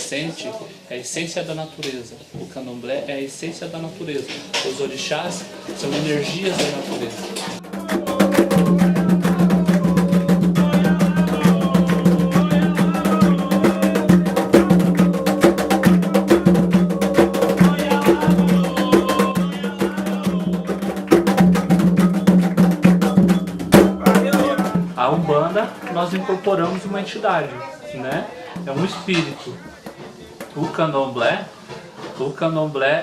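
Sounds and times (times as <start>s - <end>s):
voices singing: 4.0s - 30.7s
hand drums and percussion: 4.3s - 27.1s, 28.1s - 30.8s.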